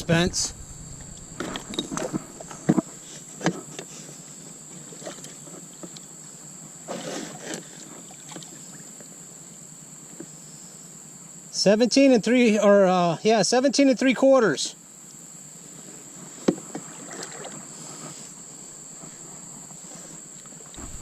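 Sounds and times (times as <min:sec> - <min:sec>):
insect drone: 0:00.0 - 0:21.0.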